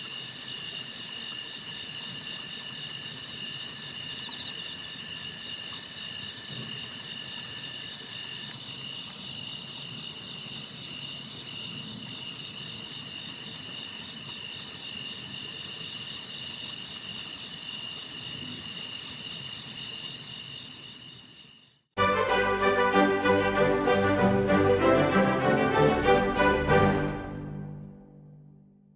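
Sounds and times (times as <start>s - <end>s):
insects chirping: 0.0s - 22.0s
instrumental music: 22.0s - 28.9s.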